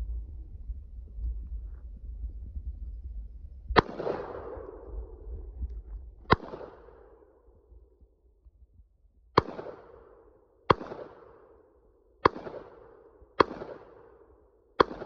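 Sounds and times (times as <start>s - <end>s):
rifle shots with echo: 3.8s - 5.5s, 6.2s - 7.6s, 9.4s - 15.0s.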